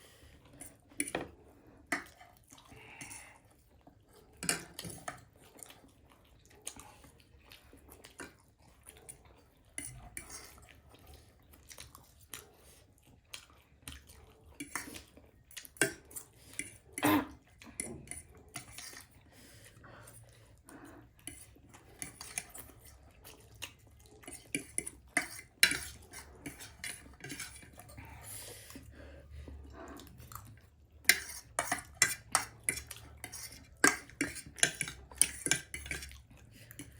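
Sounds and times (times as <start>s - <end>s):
spoons clinking against bowls: 24.6s - 27.6s, 31.1s - 36.1s.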